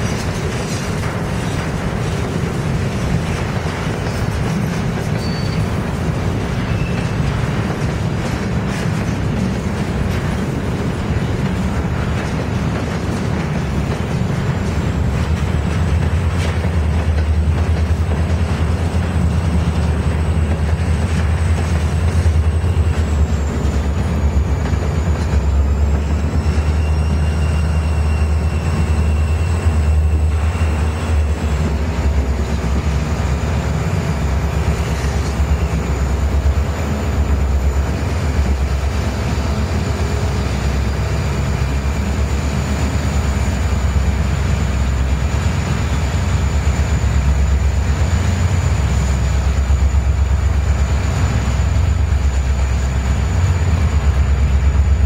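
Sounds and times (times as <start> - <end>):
train deep rumble: 0.0 - 55.0.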